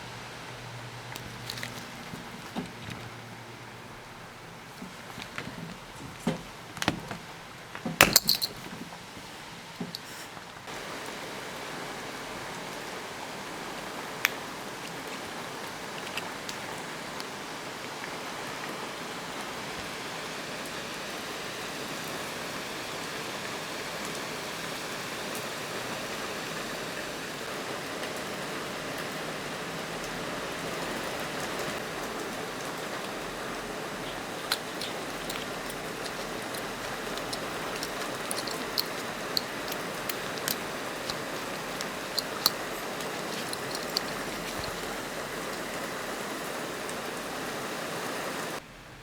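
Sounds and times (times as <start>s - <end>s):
water rushing: 10.7s - 48.6s.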